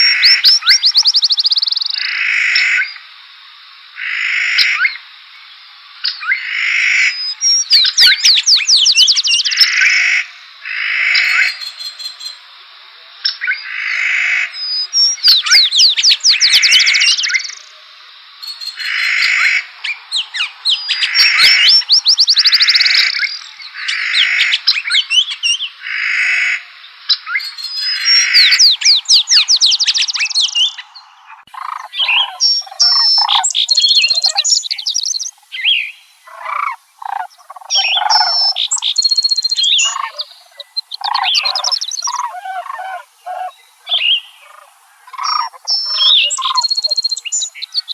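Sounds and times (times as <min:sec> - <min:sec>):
songbirds singing: 0:00.0 - 0:03.1, 0:04.0 - 0:12.6, 0:13.2 - 0:47.9
short broken bird calls: 0:39.7 - 0:46.9.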